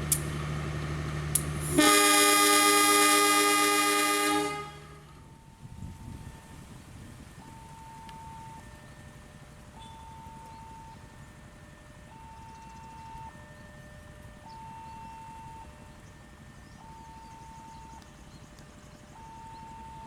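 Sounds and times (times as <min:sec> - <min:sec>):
faint electronic two-tone alarm: 0:07.4 - 0:11.3, 0:12.0 - 0:18.1, 0:19.0 - 0:20.0.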